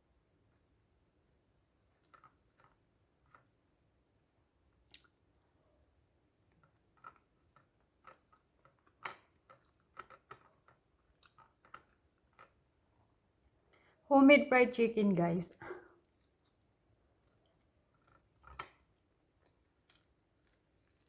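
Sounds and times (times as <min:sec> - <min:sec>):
person chewing food: 0:04.8 - 0:05.2, 0:11.0 - 0:12.0, 0:16.0 - 0:21.0.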